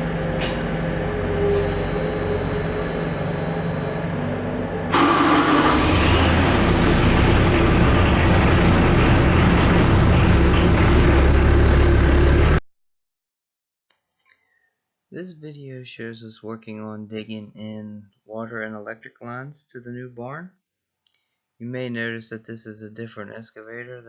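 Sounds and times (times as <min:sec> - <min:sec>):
excavator diesel engine running: 0:00.0 - 0:12.6.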